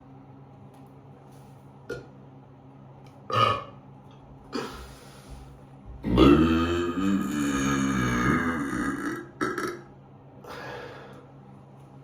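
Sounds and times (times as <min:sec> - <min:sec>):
person belching: 0:03.3 - 0:03.8, 0:06.0 - 0:09.9.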